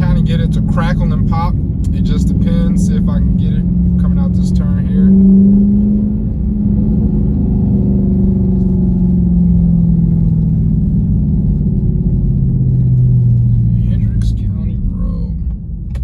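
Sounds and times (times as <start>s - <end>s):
car engine revs falling: 0.0s - 14.4s.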